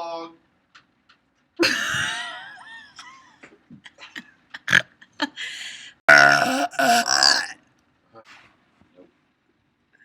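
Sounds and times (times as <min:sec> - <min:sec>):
person belching: 0:04.6 - 0:04.8, 0:06.1 - 0:07.6.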